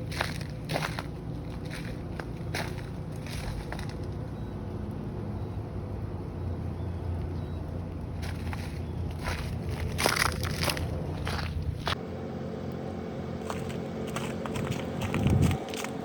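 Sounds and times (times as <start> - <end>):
footsteps crunching on snow: 0.0 - 4.2, 8.2 - 12.0, 13.4 - 16.0
steady low rumble: 0.0 - 15.9.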